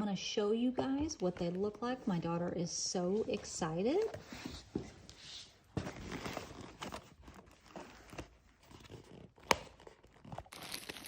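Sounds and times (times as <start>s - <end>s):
plastic packaging rustling: 5.8s - 11.0s.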